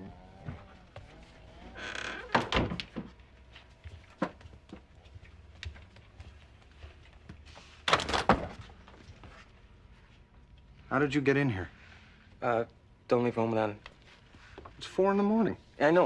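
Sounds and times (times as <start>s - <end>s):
door knocks and clunks: 0.4s - 3.2s, 7.9s - 8.7s.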